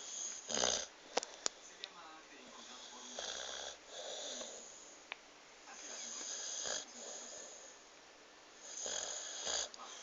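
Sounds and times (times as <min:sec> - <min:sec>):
dog snoring: 0:00.0 - 0:00.9, 0:02.6 - 0:04.9, 0:05.8 - 0:07.8, 0:08.6 - 0:10.0.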